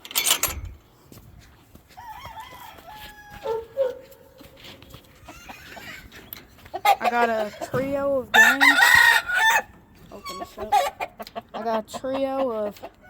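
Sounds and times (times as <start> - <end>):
rooster crowing: 1.9 - 4.0, 8.3 - 9.7.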